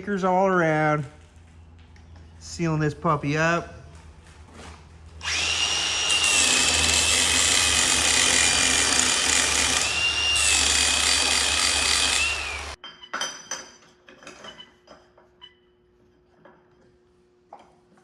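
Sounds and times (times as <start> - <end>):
angle grinder grinding steel: 5.2 - 12.8.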